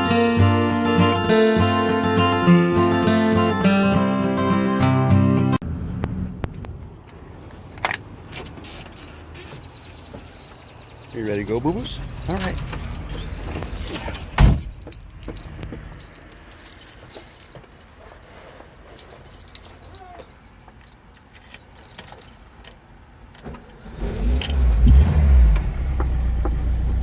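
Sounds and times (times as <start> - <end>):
car engine starting and running: 0.0 - 16.7, 22.5 - 27.0
keys jangling: 9.7 - 22.7
car door shutting: 12.6 - 15.9.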